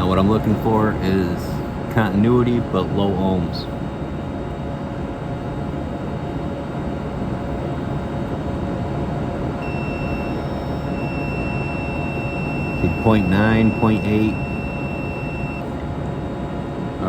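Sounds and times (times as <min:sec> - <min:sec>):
multimeter high beep: 0:09.6 - 0:15.7.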